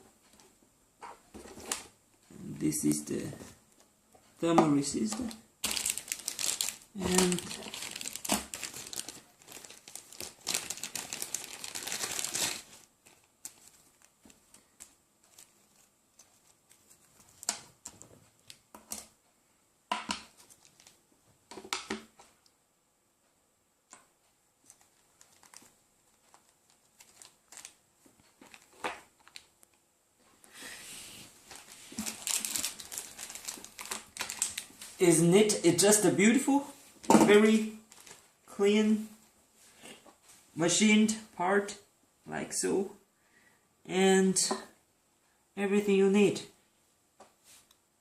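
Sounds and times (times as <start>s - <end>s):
plastic packaging crinkling: 5.0s - 19.1s, 20.2s - 21.0s, 24.7s - 29.8s, 31.4s - 35.1s, 37.3s - 38.4s.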